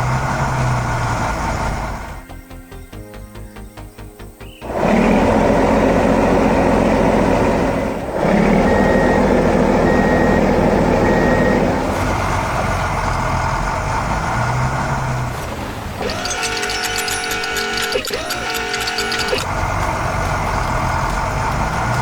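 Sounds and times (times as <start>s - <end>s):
truck engine running: 0.0s - 22.0s
back-up alarm beeps: 8.5s - 11.8s, 16.0s - 19.5s.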